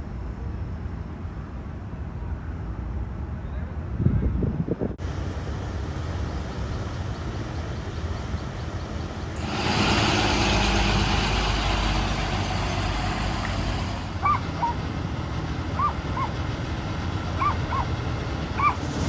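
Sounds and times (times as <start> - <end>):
vehicle engine idling: 5.0 - 19.0
bird chirping: 13.4 - 14.9, 15.6 - 18.8.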